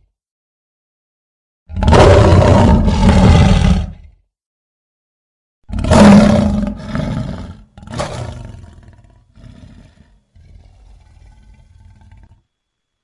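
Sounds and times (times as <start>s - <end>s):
lion roaring: 1.7s - 4.2s, 5.7s - 12.4s.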